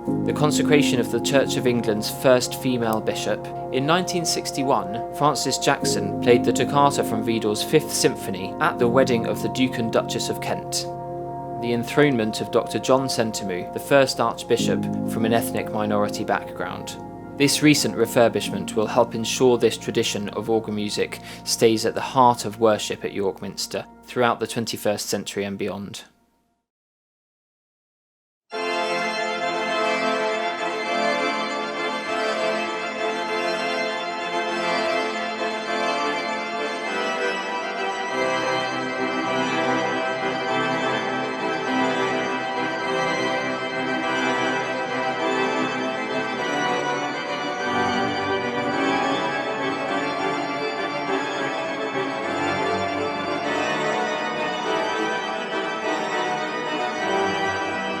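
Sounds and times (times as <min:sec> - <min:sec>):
pipe organ playing chords: 0:00.0 - 0:25.7, 0:28.5 - 0:58.0.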